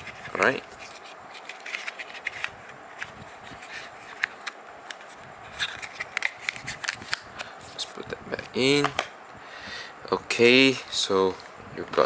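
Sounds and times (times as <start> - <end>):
plastic and cardboard rustling: 0.0 - 9.0.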